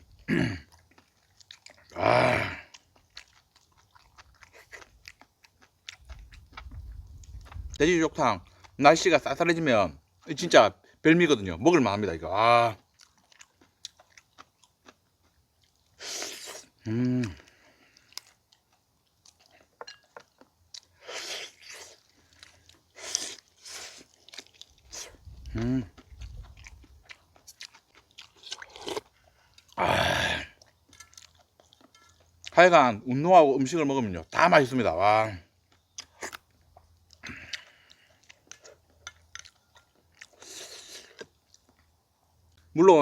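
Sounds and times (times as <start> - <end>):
man chewing and biting: 0.0 - 7.8, 12.8 - 32.6, 35.5 - 42.7
wet mouth noises: 16.0 - 18.0, 24.7 - 30.9
breathing: 17.4 - 18.2, 37.2 - 38.3.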